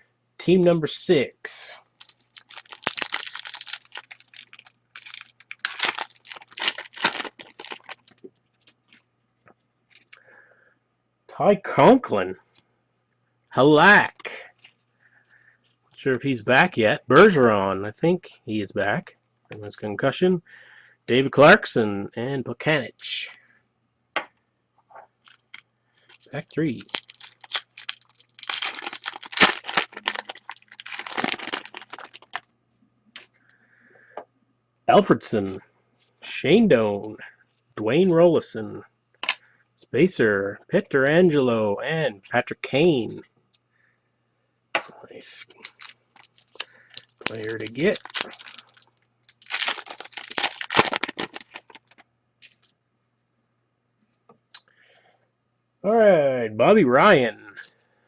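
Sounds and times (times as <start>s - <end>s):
foil wrapper crinkling: 1.9s - 8.8s, 25.3s - 32.4s, 45.5s - 52.7s.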